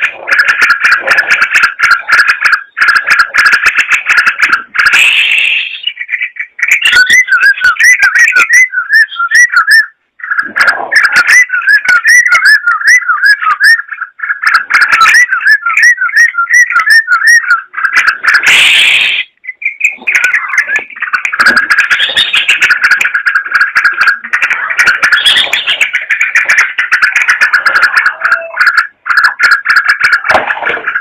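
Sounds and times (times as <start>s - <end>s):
bulbul singing whistled notes: 4.4s - 22.8s, 24.4s - 28.8s.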